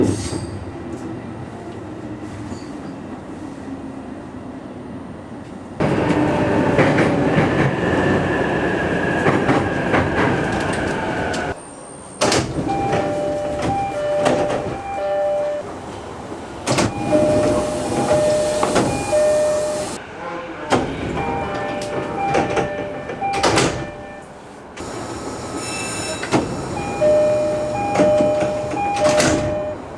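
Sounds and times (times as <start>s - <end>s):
train and platform noise: 0.0s - 29.9s
sliding doors thumping: 16.6s - 20.0s, 20.7s - 24.0s, 26.2s - 29.7s
two-note door chime: 17.0s - 19.8s.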